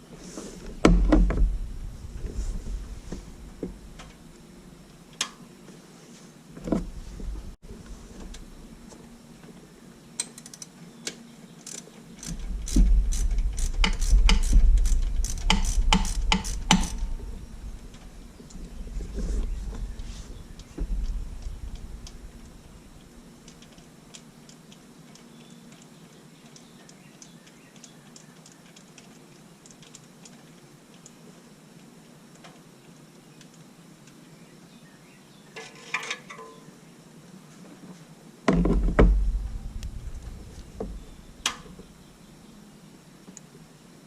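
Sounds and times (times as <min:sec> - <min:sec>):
heavy thump: 0:00.8 - 0:03.8, 0:38.5 - 0:41.7
hand tools clicking: 0:11.6 - 0:17.1
tool rattle: 0:12.2 - 0:17.2.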